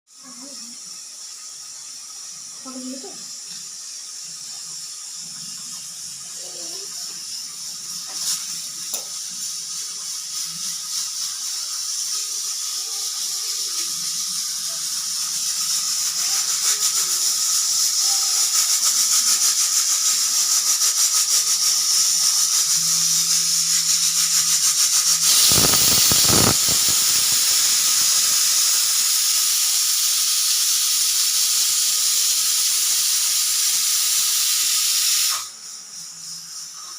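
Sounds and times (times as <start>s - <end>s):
pressure cooker whistle: 21.2s - 35.6s.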